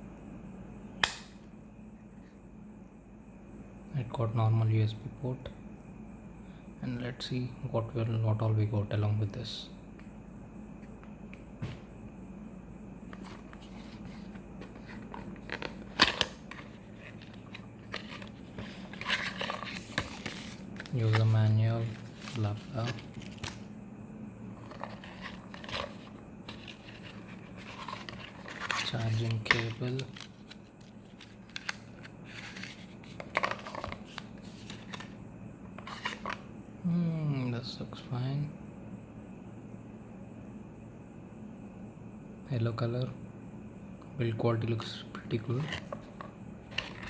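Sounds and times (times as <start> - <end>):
sharp snap of packaging: 1.0 - 1.4
plastic and paper rustling: 13.2 - 23.6, 24.6 - 35.1.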